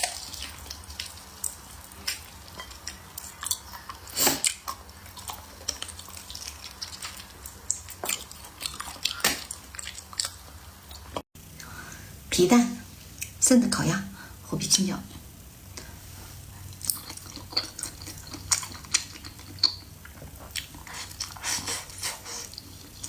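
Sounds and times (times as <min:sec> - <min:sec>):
chewing and biting: 0:00.0 - 0:11.2, 0:16.8 - 0:23.0.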